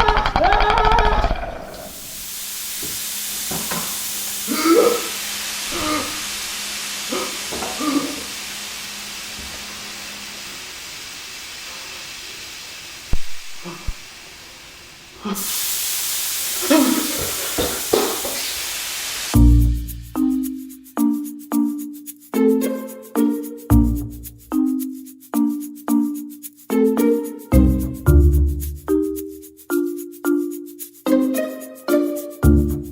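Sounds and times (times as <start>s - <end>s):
loud steady hiss: 1.8s - 21.5s.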